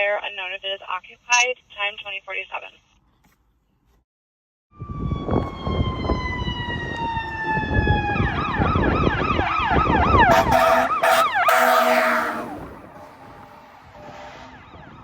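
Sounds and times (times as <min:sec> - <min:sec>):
engine and road rumble: 0:04.8 - 0:15.0
fire truck siren: 0:04.8 - 0:15.0
air horn blasts: 0:10.2 - 0:13.5.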